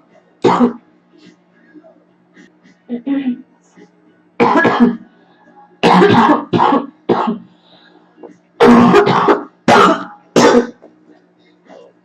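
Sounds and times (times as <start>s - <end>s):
woman coughing harshly: 0.4s - 0.8s, 4.4s - 5.0s, 5.8s - 7.5s, 8.6s - 10.8s.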